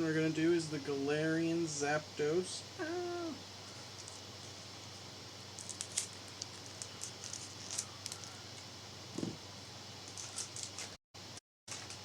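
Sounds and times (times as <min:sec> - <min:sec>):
foil wrapper crinkling: 0:05.5 - 0:08.7, 0:10.0 - 0:11.0.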